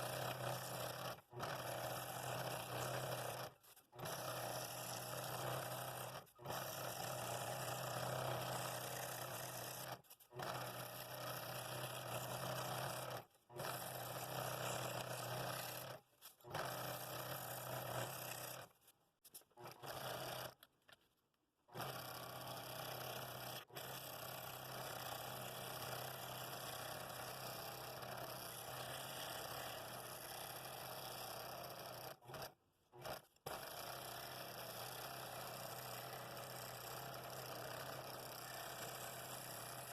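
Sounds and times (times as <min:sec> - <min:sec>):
scroll saw cutting wood: 0:00.0 - 0:20.7, 0:21.7 - 0:39.9.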